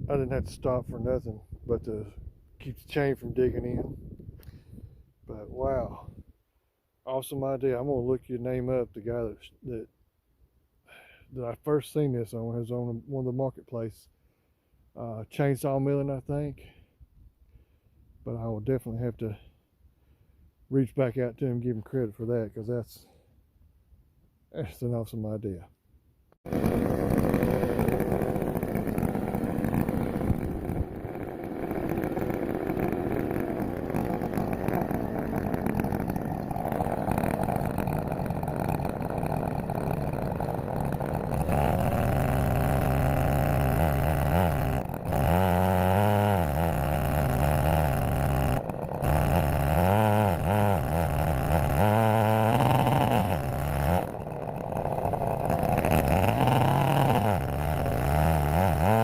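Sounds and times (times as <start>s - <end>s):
chainsaw ripping a log: 26.4s - 59.0s.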